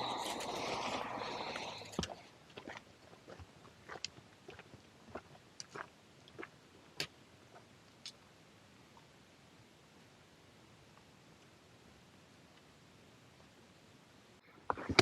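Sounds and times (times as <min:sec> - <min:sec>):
chewing berries: 0:00.1 - 0:06.6.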